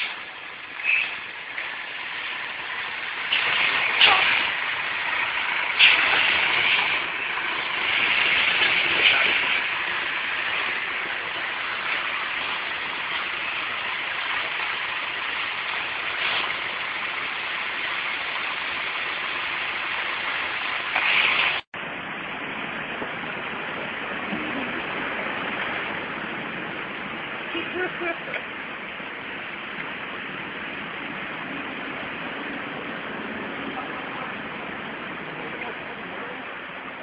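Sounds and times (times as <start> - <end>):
heavy rain: 0.0 - 37.0
running floodwater: 0.0 - 37.0.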